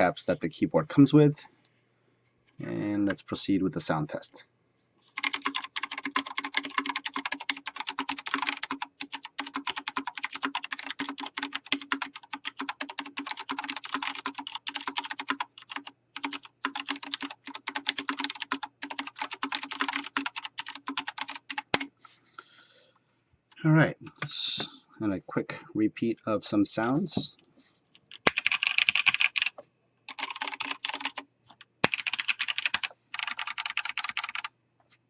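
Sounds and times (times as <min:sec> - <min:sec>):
mechanical keyboard typing: 0:05.2 - 0:21.9, 0:28.1 - 0:31.2, 0:31.8 - 0:34.5.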